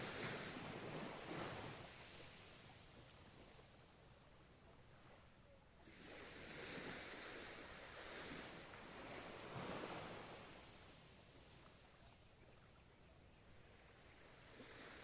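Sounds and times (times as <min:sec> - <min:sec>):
ocean wave surging and washing back: 0:00.0 - 0:02.6, 0:05.8 - 0:11.2, 0:14.3 - 0:15.0.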